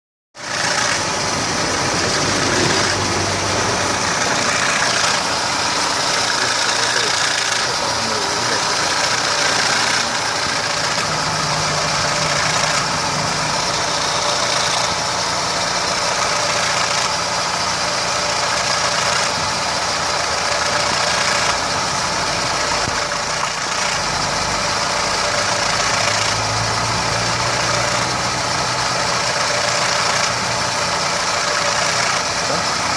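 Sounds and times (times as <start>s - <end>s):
car engine idling: 0.4s - 32.9s
timing chain knocking rattle: 6.0s - 7.9s.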